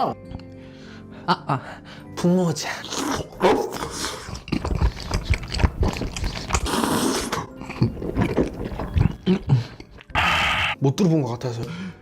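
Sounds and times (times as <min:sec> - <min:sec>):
slurp: 0:02.8 - 0:10.8
person chewing noodles: 0:02.9 - 0:10.8
wet mouth smacks and clicks: 0:03.1 - 0:07.5.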